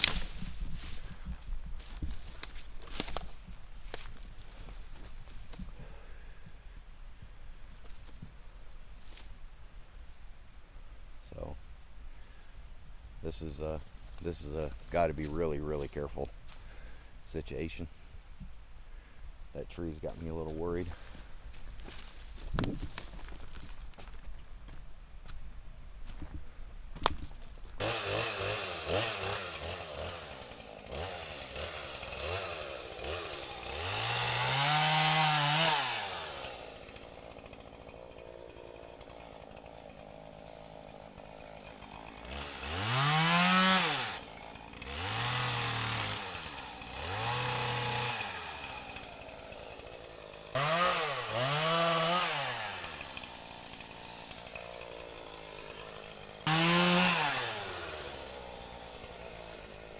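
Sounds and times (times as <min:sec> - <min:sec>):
chainsaw revving: 0:27.8 - 0:59.9.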